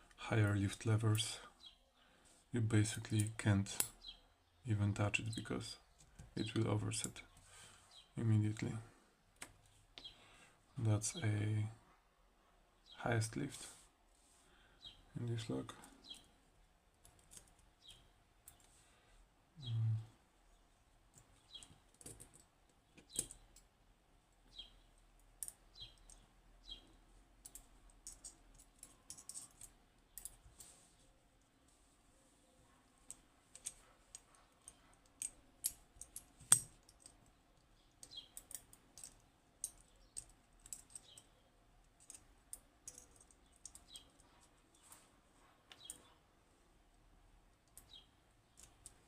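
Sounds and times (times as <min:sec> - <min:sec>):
small metallic clicks and taps: 0:21.1 - 0:23.7, 0:27.4 - 0:30.7, 0:33.0 - 0:45.0, 0:47.6 - 0:49.0.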